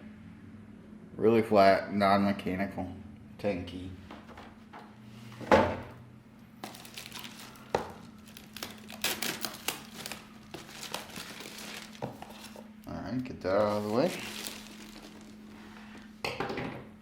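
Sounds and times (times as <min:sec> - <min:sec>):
packaging crinkling and rustling: 0:06.6 - 0:16.2.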